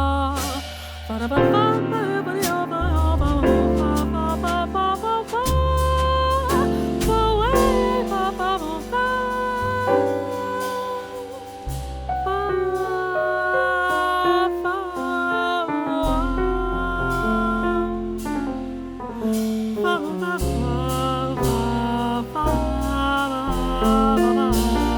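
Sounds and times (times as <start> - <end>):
person singing with vibrato: 0.0 - 11.6
drums with cymbal strokes: 0.0 - 13.0, 17.2 - 24.9
double bass: 0.0 - 24.9
piano: 0.0 - 24.9.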